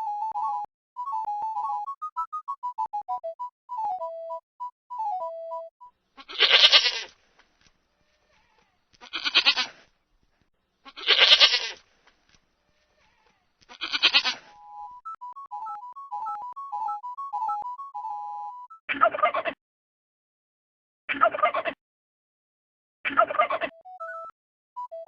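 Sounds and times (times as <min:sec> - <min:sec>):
goat bleating: 0:06.2 - 0:07.2, 0:08.3 - 0:09.9, 0:10.8 - 0:11.8, 0:13.0 - 0:14.5.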